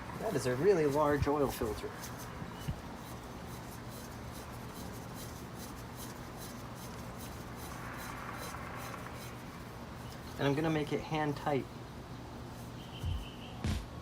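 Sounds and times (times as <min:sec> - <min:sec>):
oil filter rubbing and ticking: 0:00.0 - 0:11.8, 0:12.4 - 0:13.3
steady low hum: 0:00.0 - 0:14.0.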